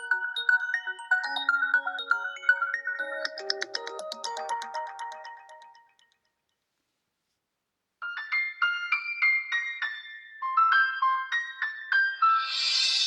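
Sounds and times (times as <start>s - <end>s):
bright keyboard-like ringtone: 0.1s - 6.0s.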